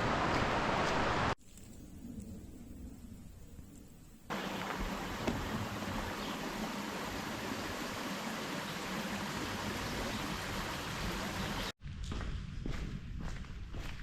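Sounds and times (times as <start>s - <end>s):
creek water rushing over rapids: 0.0s - 1.4s, 4.3s - 11.7s
footsteps on trail: 11.9s - 14.0s.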